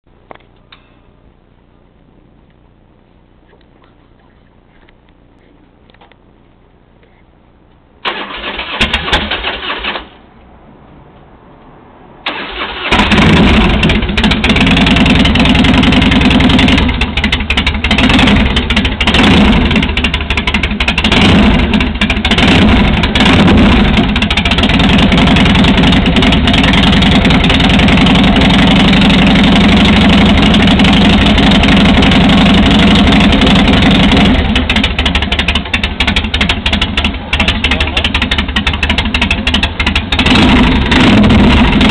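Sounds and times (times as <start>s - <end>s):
motorcycle engine starting and running: 8.0s - 10.3s, 12.2s - 41.9s.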